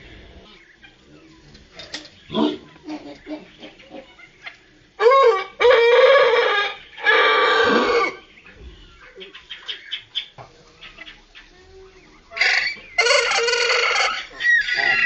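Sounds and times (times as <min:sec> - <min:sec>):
slowed rooster crowing: 0:05.0 - 0:08.2, 0:12.5 - 0:15.0.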